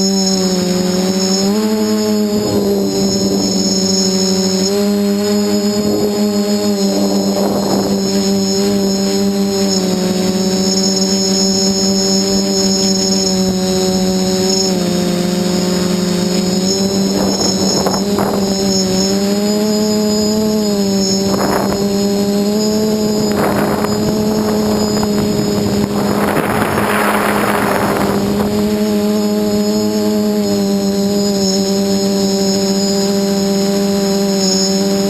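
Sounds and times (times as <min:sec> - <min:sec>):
drone motors buzzing: 0:00.0 - 0:35.0
rushing noise bursts: 0:16.2 - 0:30.3.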